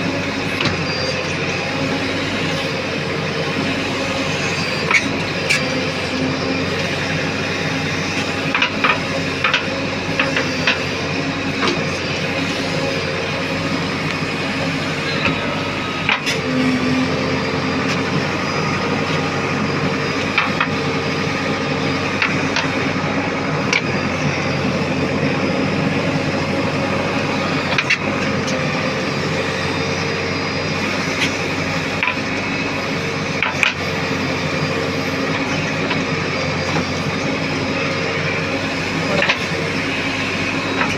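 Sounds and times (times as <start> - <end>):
diesel engine running: 0.0 - 40.9.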